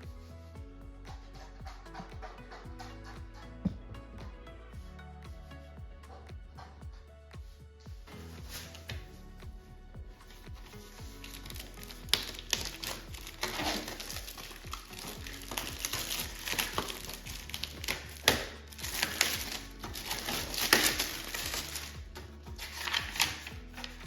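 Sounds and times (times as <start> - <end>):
background music: 0.0 - 24.0
scraping and crinkling handling noises: 7.5 - 24.0.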